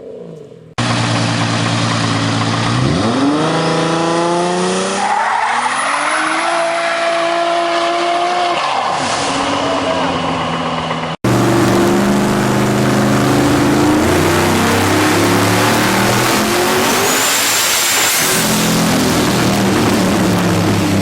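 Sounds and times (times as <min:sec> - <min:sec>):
car engine running hard: 0:00.8 - 0:05.1, 0:09.3 - 0:21.0.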